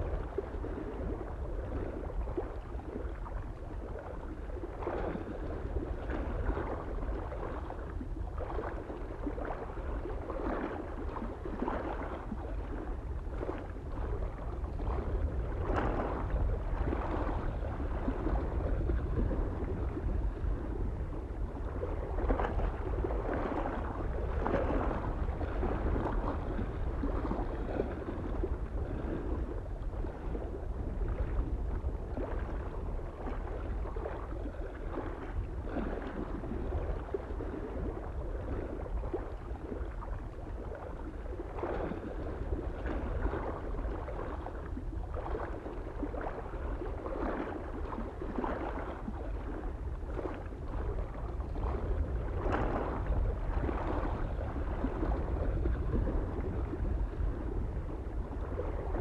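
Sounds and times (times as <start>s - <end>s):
lake waves lapping on shore: 0.0s - 59.0s
soft steady wind: 0.0s - 59.0s.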